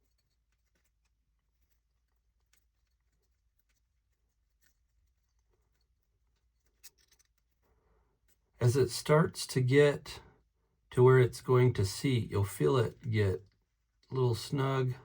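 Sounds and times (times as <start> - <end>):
faint ticks of small parts: 0.0 - 8.6.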